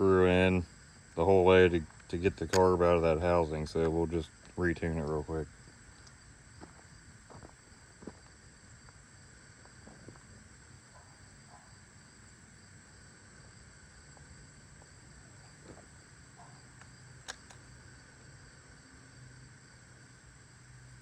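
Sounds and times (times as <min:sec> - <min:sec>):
crickets chirring: 0:00.0 - 0:21.0.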